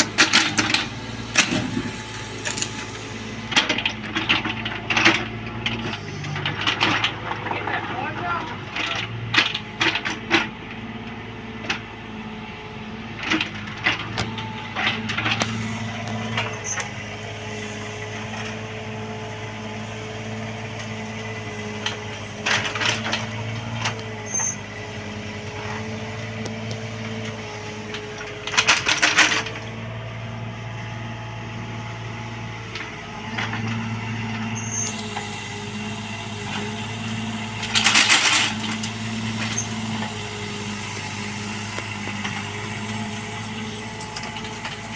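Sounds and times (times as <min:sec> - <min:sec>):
excavator engine running: 0:00.0 - 0:44.9
clattering bursts: 0:37.6 - 0:39.7.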